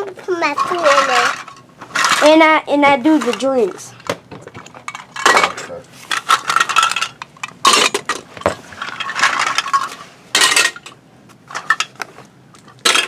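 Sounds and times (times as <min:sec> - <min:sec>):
toy food pieces clattering: 0:00.4 - 0:02.4.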